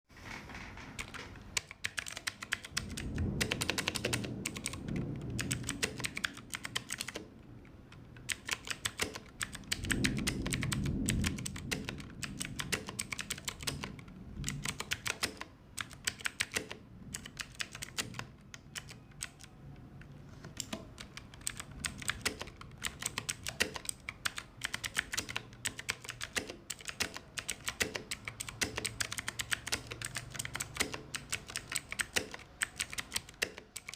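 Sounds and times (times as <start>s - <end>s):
low thud of heavy typing: 0.2s - 7.3s, 8.4s - 15.4s
mechanical keyboard key clicks: 1.0s - 7.3s, 7.9s - 33.9s.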